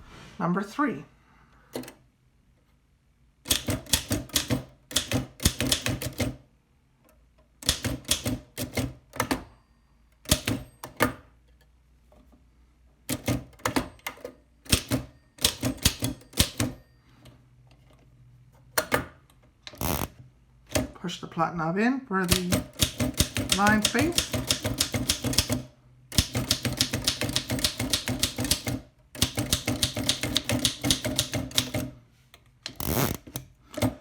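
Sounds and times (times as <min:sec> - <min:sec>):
typewriter typing: 0:03.5 - 0:06.4, 0:07.6 - 0:09.5, 0:14.7 - 0:16.8, 0:22.3 - 0:31.9.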